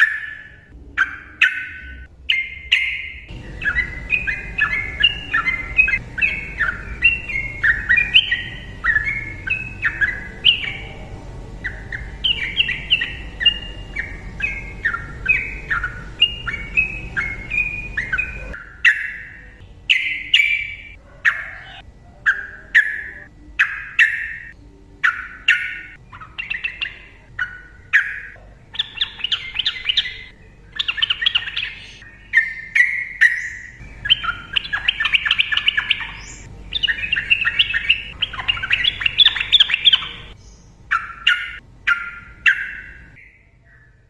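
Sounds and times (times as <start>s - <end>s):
background hum: 0.0s - 44.0s
bird singing bubbling notes: 0.0s - 44.0s.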